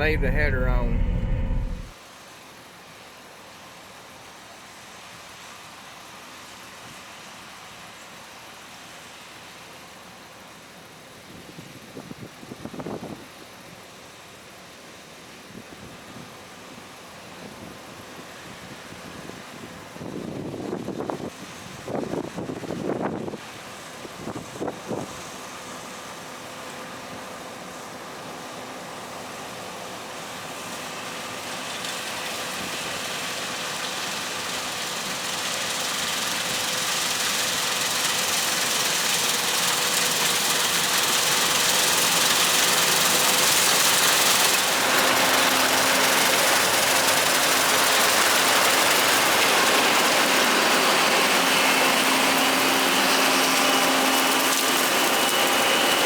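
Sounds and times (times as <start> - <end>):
combine harvester running: 0.0 - 1.9, 28.8 - 56.0.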